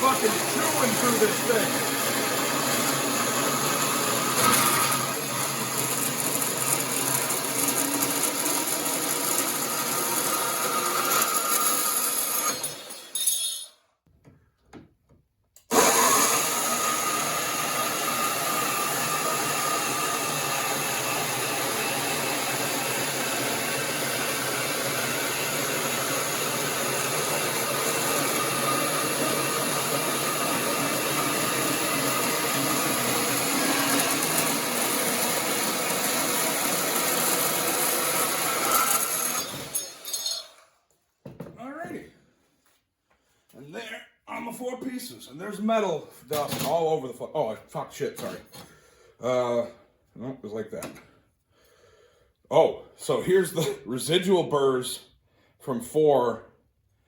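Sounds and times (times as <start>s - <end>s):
band saw cutting steel: 0.0s - 13.7s, 15.7s - 40.7s.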